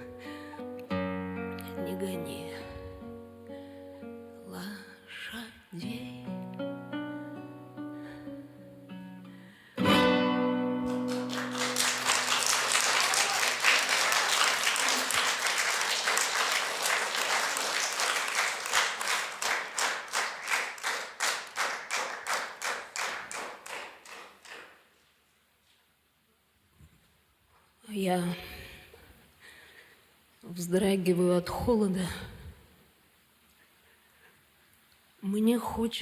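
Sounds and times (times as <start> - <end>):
audience applause: 10.8 - 24.8
rhythmic clapping in unison: 10.8 - 25.0.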